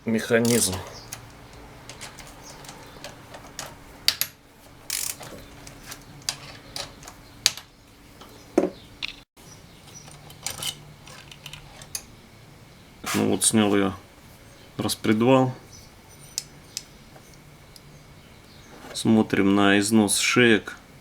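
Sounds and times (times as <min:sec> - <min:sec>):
faint steady hum: 0:00.0 - 0:21.0
metal parts and tools clinking: 0:00.3 - 0:07.7, 0:09.8 - 0:12.1, 0:16.0 - 0:17.9.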